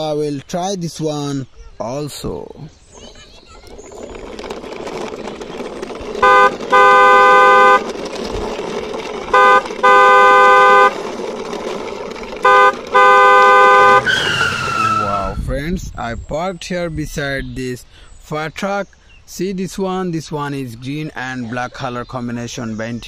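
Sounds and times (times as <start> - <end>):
steady rolling noise: 2.1 - 17.3
horn honking: 6.2 - 8.2, 9.2 - 11.2, 12.2 - 15.3.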